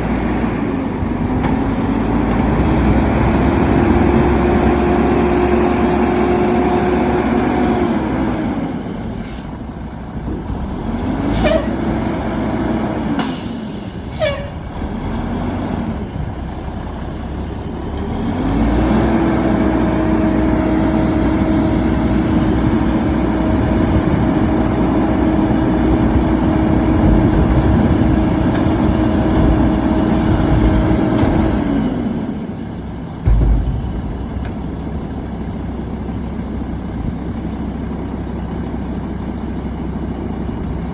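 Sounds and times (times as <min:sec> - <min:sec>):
garbage truck diesel engine revving: 0:00.0 - 0:38.3
thump: 0:33.2 - 0:35.1.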